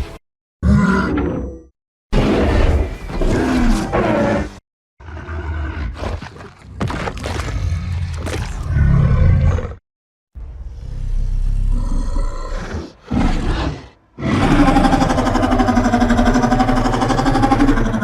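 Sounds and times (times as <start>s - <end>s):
creature roar: 7.0s - 9.8s, 11.3s - 18.0s.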